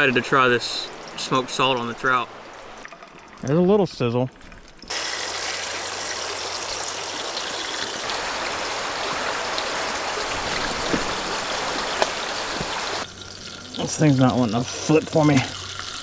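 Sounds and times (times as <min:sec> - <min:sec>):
fish sizzling in a pan: 0:04.9 - 0:13.4
faint oil pops: 0:09.0 - 0:13.0.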